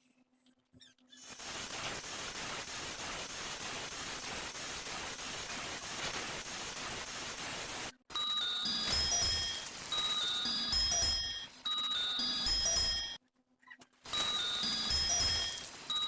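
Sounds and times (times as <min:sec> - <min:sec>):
static hiss: 0:01.2 - 0:11.0, 0:14.1 - 0:16.0
high-pitched whine: 0:14.1 - 0:16.0.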